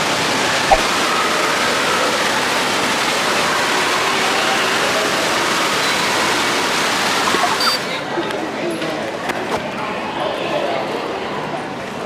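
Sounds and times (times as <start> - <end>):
water rushing and splashing: 0.7 - 7.7
faint crowd voices: 0.7 - 12.0.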